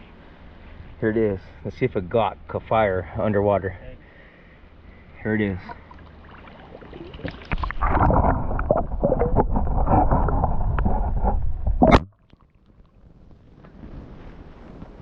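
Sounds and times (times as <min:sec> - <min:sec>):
water churning and gurgling: 0:05.2 - 0:13.1
underwater gunshot crack: 0:11.8 - 0:12.2.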